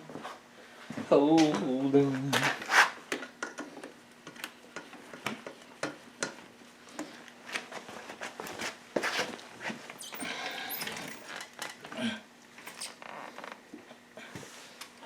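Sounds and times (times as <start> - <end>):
hand tools clicking and tapping: 3.1 - 6.4.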